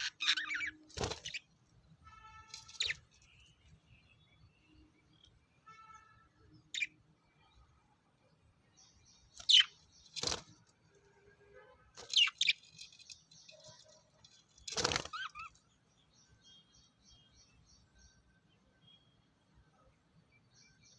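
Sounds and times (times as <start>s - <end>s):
lovebirds shrieking: 0.0s - 1.5s, 2.5s - 3.1s, 12.0s - 12.7s, 14.7s - 15.6s
quiet bird twittering: 0.0s - 5.6s, 6.4s - 10.7s, 12.0s - 20.9s.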